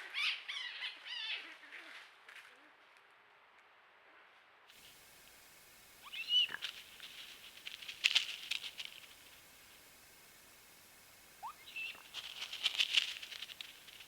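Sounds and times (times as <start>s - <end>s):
rapid high chattering clicks: 4.8s - 14.0s
animal squeaky call: 6.0s - 6.7s, 11.4s - 12.1s.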